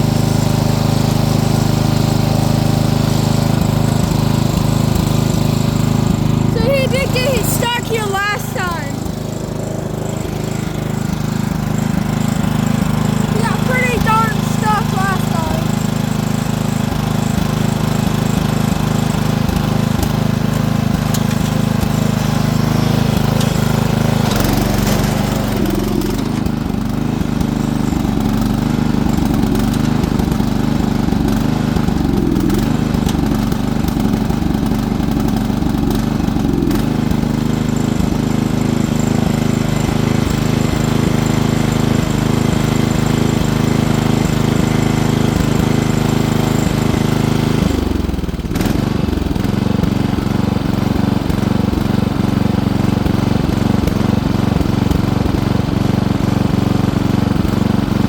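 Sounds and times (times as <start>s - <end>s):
small petrol engine running: 0.0s - 58.0s.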